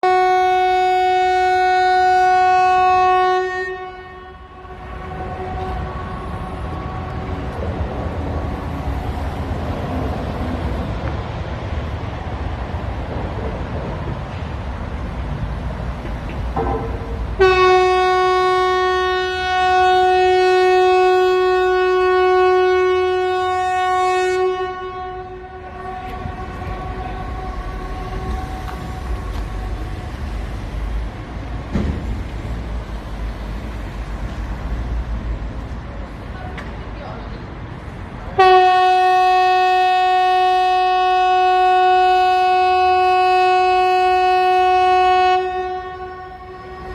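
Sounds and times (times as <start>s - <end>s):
distant sirens: 0.0s - 11.2s, 17.4s - 31.1s, 38.4s - 46.9s.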